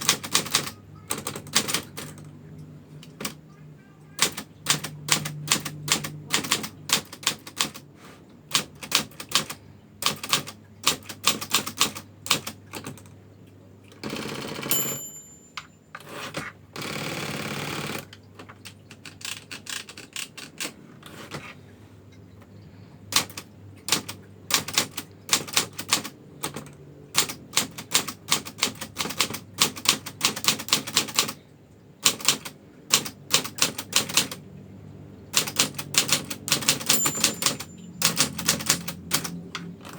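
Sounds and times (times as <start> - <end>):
typewriter carriage return rattle: 0.0 - 2.3, 3.0 - 3.4, 4.2 - 7.9, 8.5 - 13.1, 13.9 - 15.4, 16.0 - 21.5, 23.1 - 31.4, 32.0 - 34.4, 35.3 - 39.9
typewriter keys clacking: 0.0 - 2.4, 3.0 - 3.4, 4.2 - 7.9, 8.5 - 13.1, 14.0 - 21.5, 23.1 - 31.4, 32.0 - 34.4, 35.4 - 39.9
typewriter bell ding: 14.4 - 16.0, 36.3 - 39.4.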